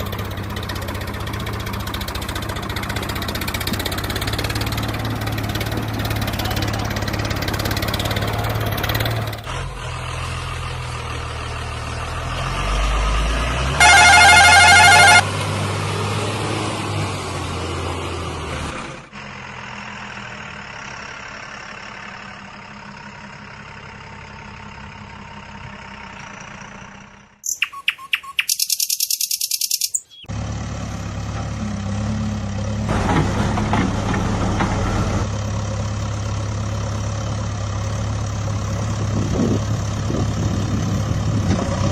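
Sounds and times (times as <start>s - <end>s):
heavy diesel engines running: 0.0s - 41.9s
loud vehicle horn: 13.8s - 15.3s.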